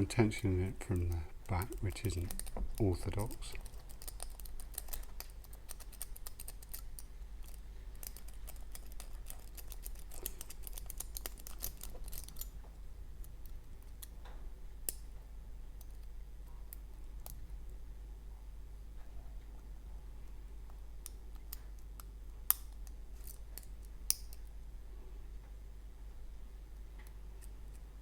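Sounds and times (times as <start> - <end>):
lock pick clicking in a lock: 1.0 - 12.6, 21.0 - 24.5.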